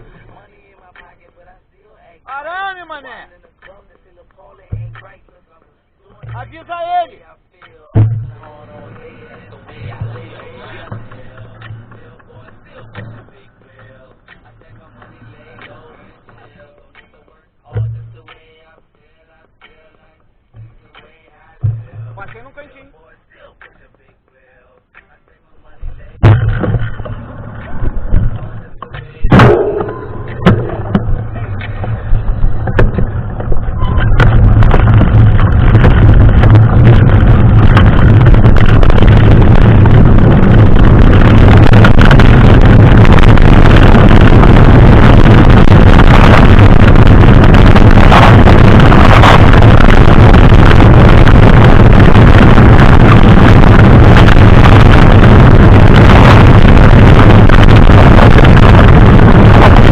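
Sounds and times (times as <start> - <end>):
wind buffeting microphone: 25.9 - 59.9
bike knocks and rattles: 26.2 - 38.0.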